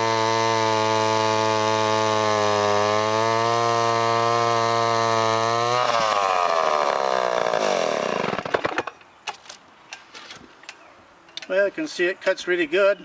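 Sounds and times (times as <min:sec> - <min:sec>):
chainsaw running at high speed: 0:00.0 - 0:08.5.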